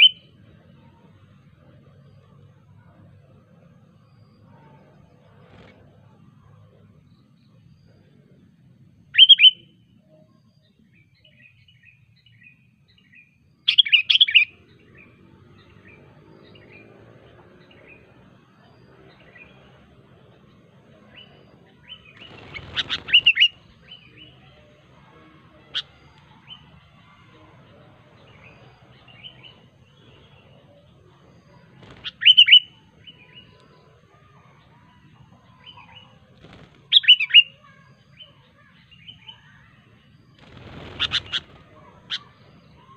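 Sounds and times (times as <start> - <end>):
bird chirping in sharp bursts: 0.0 - 0.3, 21.1 - 24.4, 31.4 - 33.6, 35.6 - 42.9.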